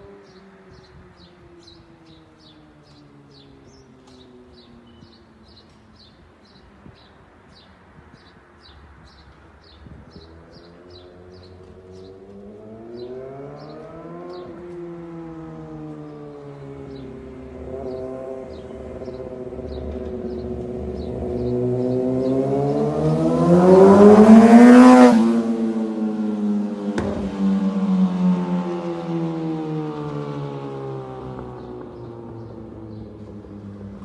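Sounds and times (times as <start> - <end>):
motorcycle engine revving: 10.5 - 34.0.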